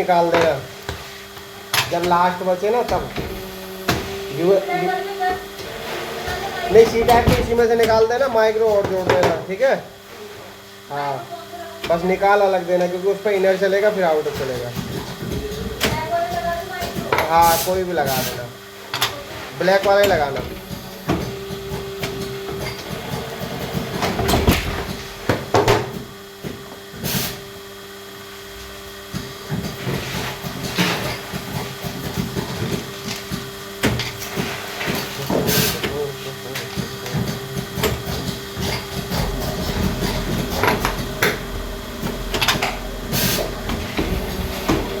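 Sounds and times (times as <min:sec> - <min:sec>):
machinery humming: 0:00.0 - 0:45.0.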